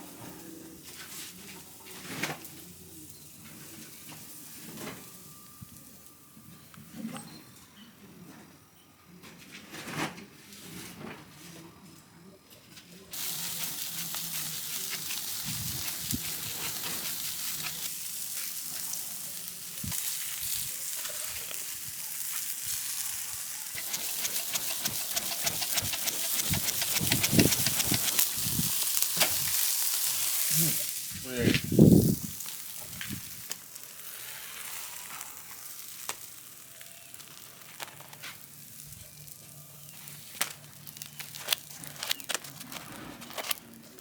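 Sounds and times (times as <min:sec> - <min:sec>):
food sizzling in hot fat: 0:13.1 - 0:42.3.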